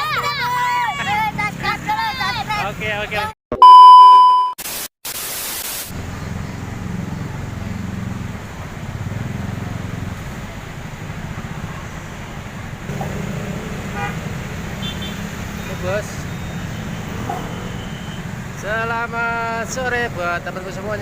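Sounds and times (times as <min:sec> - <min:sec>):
bus engine running: 0:00.0 - 0:03.3, 0:05.9 - 0:21.0
voices: 0:00.0 - 0:03.3, 0:08.9 - 0:21.0.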